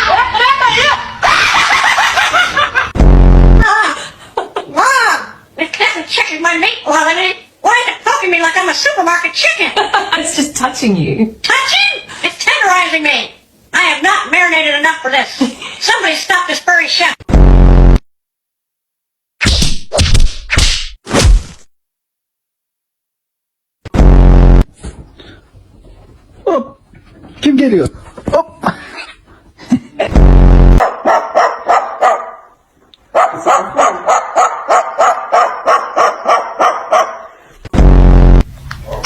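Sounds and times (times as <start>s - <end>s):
rapid bark-like yapping: 30.8s - 37.4s.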